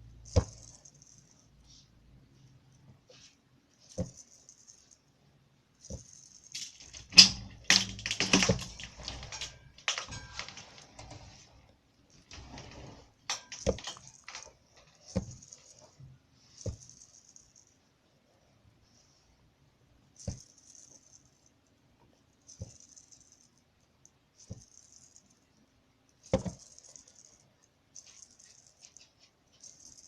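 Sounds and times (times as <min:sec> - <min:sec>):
small objects clicking and rattling: 0:00.2 - 0:01.4, 0:05.8 - 0:11.4, 0:12.2 - 0:16.0, 0:22.5 - 0:23.6, 0:24.4 - 0:25.4, 0:26.2 - 0:27.4, 0:28.0 - 0:30.0.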